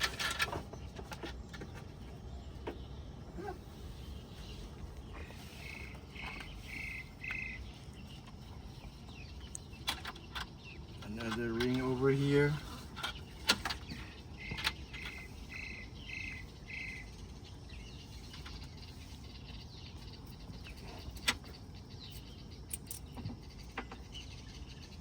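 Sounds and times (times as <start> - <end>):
buckle hardware clicking: 22.7 - 23.1.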